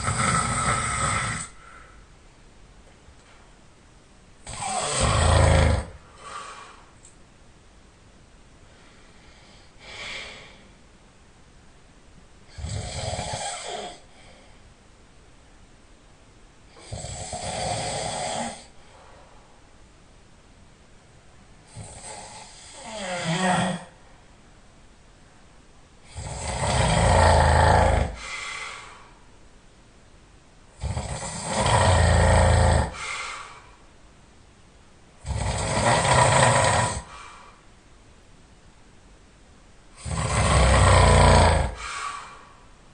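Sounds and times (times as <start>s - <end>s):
man snoring: 0.0s - 1.6s, 4.4s - 6.0s, 12.5s - 14.0s, 16.8s - 18.7s, 21.7s - 23.9s, 26.0s - 28.4s, 30.8s - 33.2s, 35.2s - 37.2s, 40.0s - 42.1s
soft breath: 1.4s - 2.2s, 6.0s - 7.1s, 8.6s - 10.9s, 14.1s - 14.8s, 18.6s - 19.8s, 28.1s - 29.4s, 32.9s - 34.0s, 37.0s - 37.7s, 41.7s - 42.9s.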